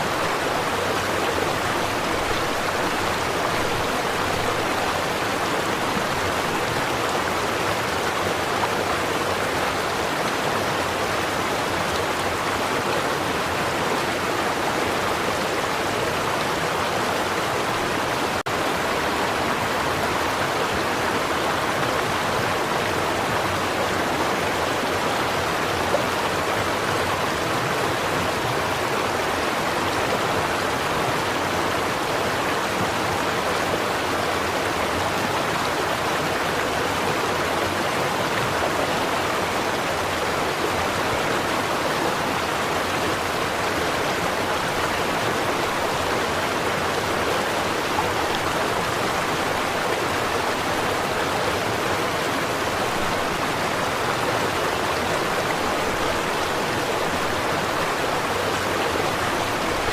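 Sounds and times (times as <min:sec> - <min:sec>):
creek water babbling over stones: 0:00.0 - 0:59.9.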